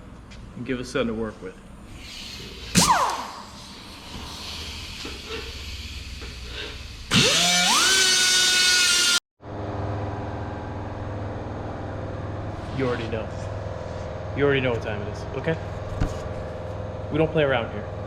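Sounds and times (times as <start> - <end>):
steady low hum: 0.0 - 8.1, 9.4 - 18.0
angle grinder cutting steel: 7.1 - 9.2.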